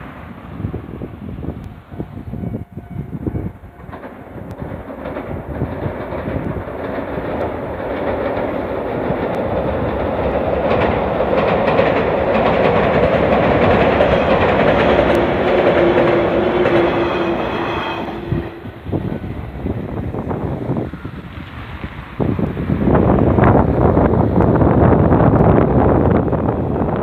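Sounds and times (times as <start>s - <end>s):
electric train passing: 0.0s - 27.0s.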